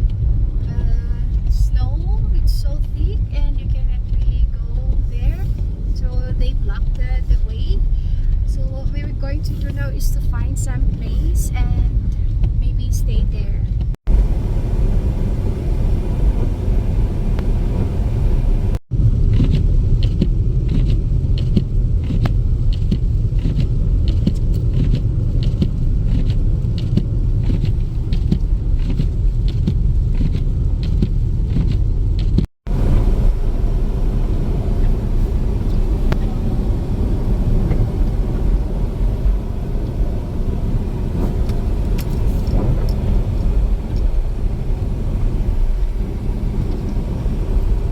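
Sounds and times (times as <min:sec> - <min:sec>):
car driving rumble inside cabin: 0:00.0 - 0:47.9.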